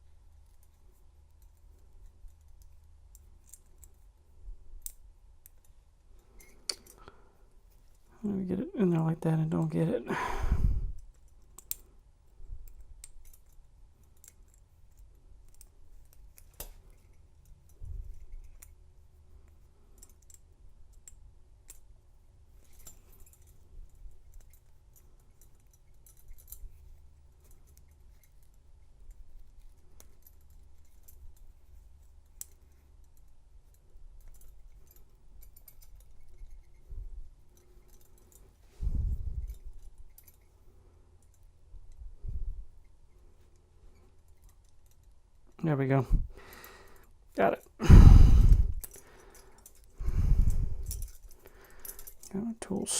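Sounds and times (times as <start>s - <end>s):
tool clicking in handcuff lock: 11.0s - 11.9s, 20.0s - 21.9s, 48.5s - 52.3s.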